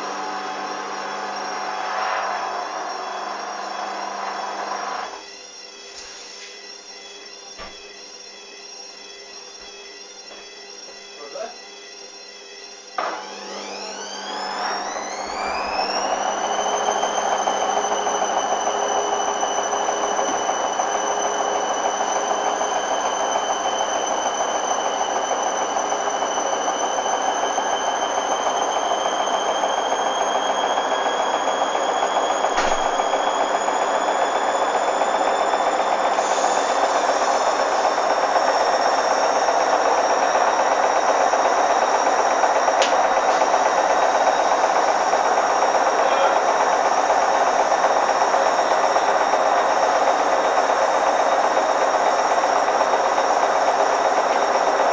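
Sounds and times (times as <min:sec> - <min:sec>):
washing machine motor whine: 0:00.0 - 0:54.9
loud rushing noise: 0:01.6 - 0:02.9.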